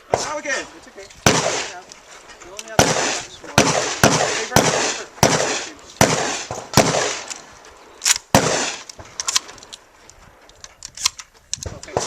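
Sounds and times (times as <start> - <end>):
shotgun shots echoing: 0.0 - 1.8, 2.6 - 9.5
gun action clicks and clacks: 1.0 - 2.9, 6.8 - 12.0.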